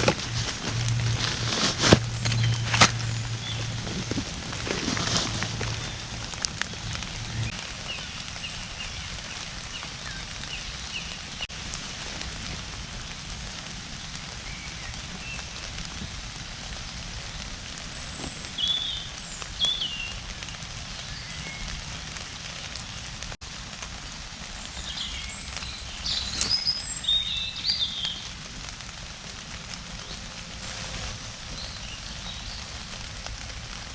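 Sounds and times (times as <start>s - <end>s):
birds chirping: 0.0s - 11.5s, 17.3s - 23.1s, 24.6s - 28.4s, 31.5s - 33.0s
steady rain falling: 0.0s - 33.9s.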